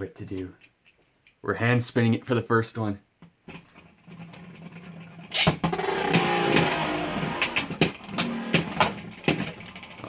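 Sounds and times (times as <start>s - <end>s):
spinning tops whirring and scraping: 4.0s - 10.0s
tops clacking together: 4.7s - 10.0s.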